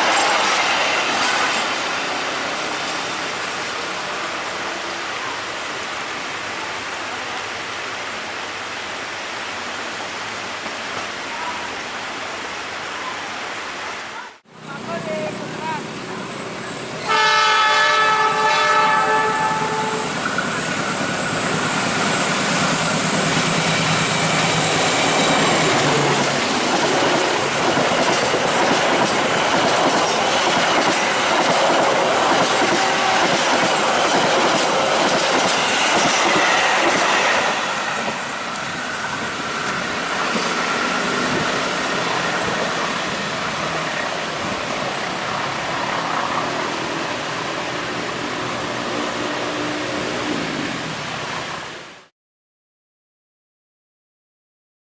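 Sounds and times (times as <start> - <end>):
train passing with rail noise: 0.0 - 52.1
train horn: 17.0 - 20.2.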